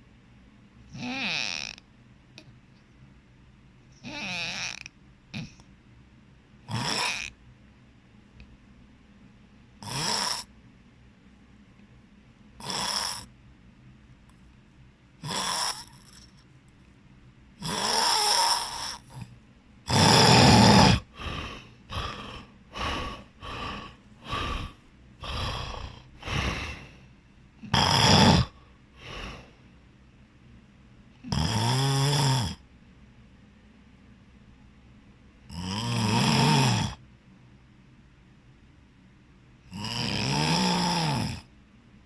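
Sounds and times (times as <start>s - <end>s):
person snoring heavily: 0.9s - 1.8s, 4.0s - 5.6s, 6.7s - 7.4s, 9.8s - 10.5s, 12.6s - 13.3s, 15.2s - 16.3s, 17.6s - 19.3s, 19.9s - 27.0s, 27.6s - 29.6s, 31.2s - 32.6s, 35.5s - 37.0s, 39.7s - 41.5s
short breaths: 20.9s - 27.2s.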